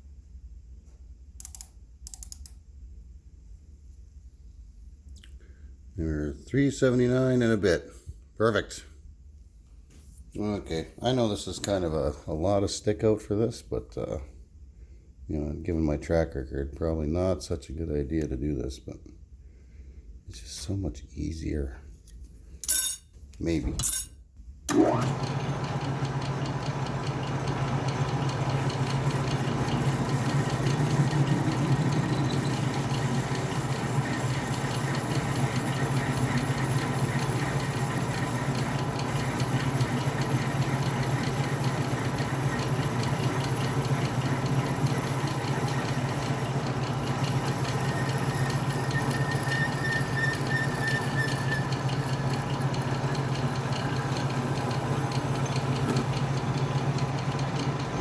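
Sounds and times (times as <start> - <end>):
metal lathe humming: 24.7 - 58.0.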